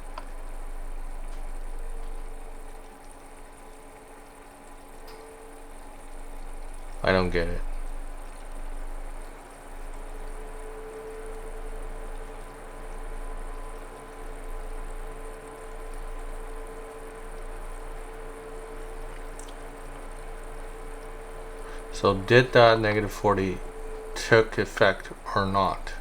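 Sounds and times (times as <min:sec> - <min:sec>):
computer cooling fans whirring: 0:00.0 - 0:26.0.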